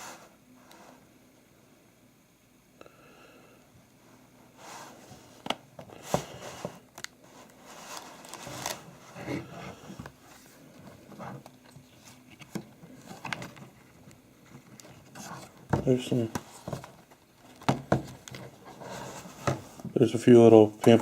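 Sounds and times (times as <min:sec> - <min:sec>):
hands rustling a plastic case: 0:05.0 - 0:20.1.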